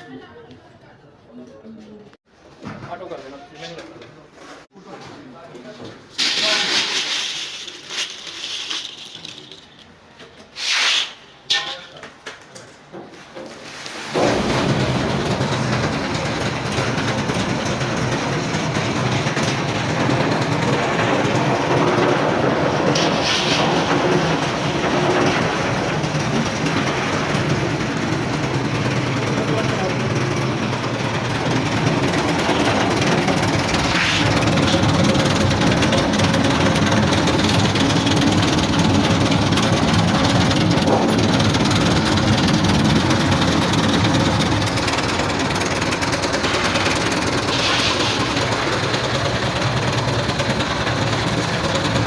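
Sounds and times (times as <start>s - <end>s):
short hiss: 10.5s - 11.8s
machinery running steadily: 14.2s - 52.0s.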